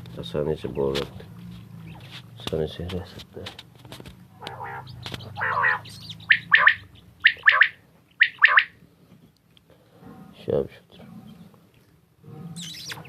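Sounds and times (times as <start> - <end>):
quail calls: 4.4 - 8.8
quail rasping churr: 4.4 - 8.8, 12.5 - 13.0.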